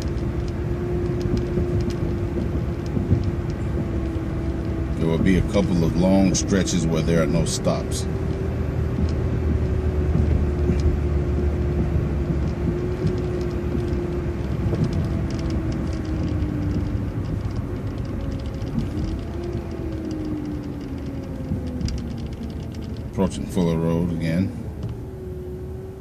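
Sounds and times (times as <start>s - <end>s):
bus driving with whining drivetrain: 0.0s - 26.0s.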